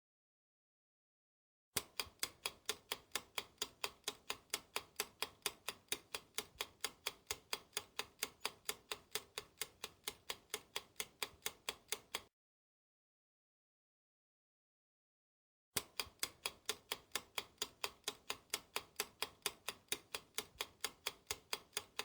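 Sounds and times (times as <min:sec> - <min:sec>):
clock-like ticking: 0:01.8 - 0:12.3, 0:15.8 - 0:22.0.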